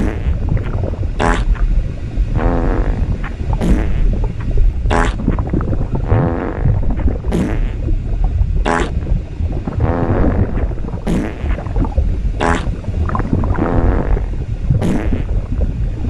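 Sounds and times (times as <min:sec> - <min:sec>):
cartoon fart sound effects: 0:00.0 - 0:00.4, 0:01.2 - 0:01.5, 0:02.4 - 0:04.1, 0:04.9 - 0:05.4, 0:06.0 - 0:07.8, 0:08.6 - 0:09.0, 0:09.8 - 0:11.6, 0:12.4 - 0:12.7, 0:13.6 - 0:15.3
continuous low rumble: 0:00.0 - 0:16.0.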